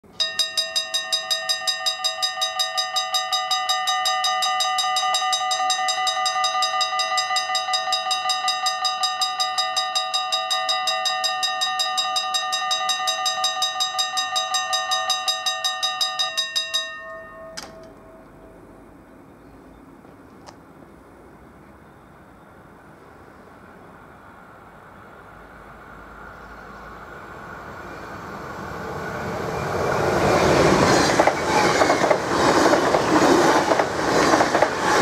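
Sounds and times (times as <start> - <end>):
level crossing bell ringing: 0.1 - 18.6.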